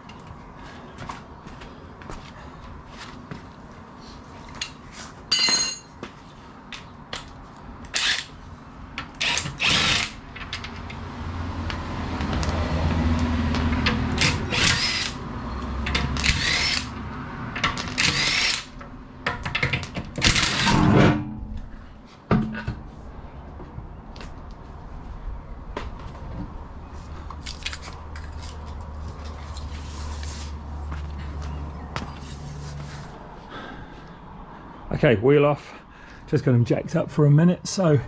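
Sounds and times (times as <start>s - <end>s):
impact wrench whirring: 9.2s - 10.2s, 14.1s - 15.2s, 16.1s - 16.9s, 17.8s - 18.7s, 20.2s - 20.9s.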